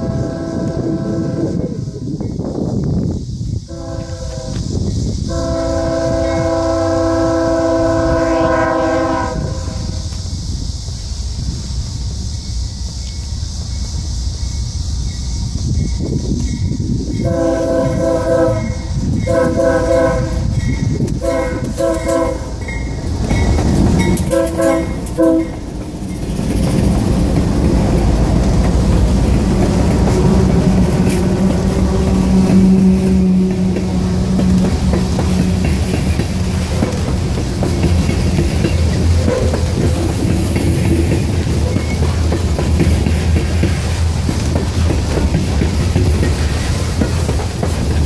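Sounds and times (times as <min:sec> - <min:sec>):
locomotive air horn blasts: 0:00.0 - 0:01.8, 0:03.7 - 0:04.7, 0:05.3 - 0:10.0, 0:17.2 - 0:20.6, 0:21.2 - 0:22.7, 0:24.1 - 0:25.6, 0:30.6 - 0:35.6
locomotive engine rumble: 0:00.0 - 0:48.0
wheels clicking over rail joints: 0:10.0 - 0:48.0.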